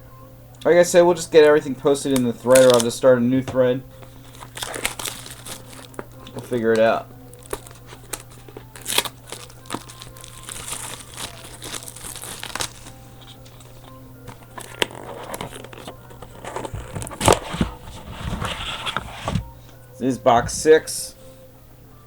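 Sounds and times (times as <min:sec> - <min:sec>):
plastic wrapping crinkling and tearing: 0:01.9 - 0:03.0, 0:03.9 - 0:19.3.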